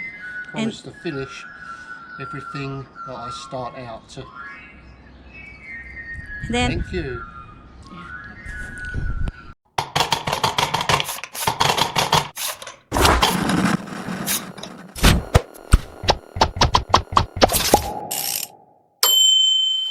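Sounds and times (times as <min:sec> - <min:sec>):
fast sharp clicks: 0:09.8 - 0:12.8, 0:15.0 - 0:18.5.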